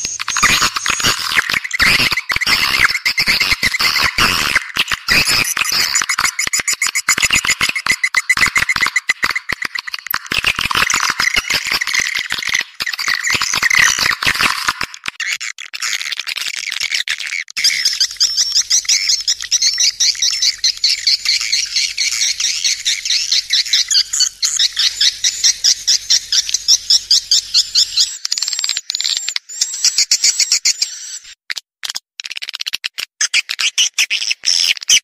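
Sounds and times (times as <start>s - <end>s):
swiftlet twittering chirps: 17.6s - 31.3s.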